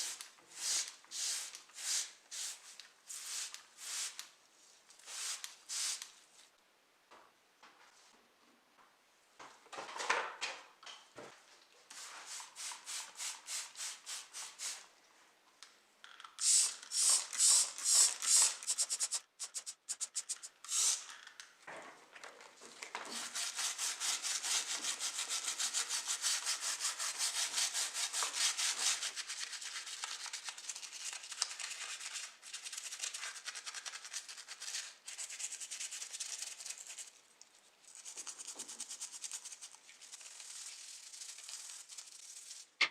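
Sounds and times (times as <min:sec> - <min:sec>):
hand rubbing a model car: 0:18.5 - 0:20.6.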